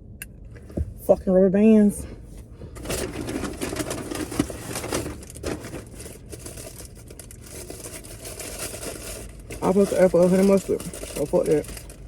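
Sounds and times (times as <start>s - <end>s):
packaging crinkling and rustling: 2.8s - 12.0s.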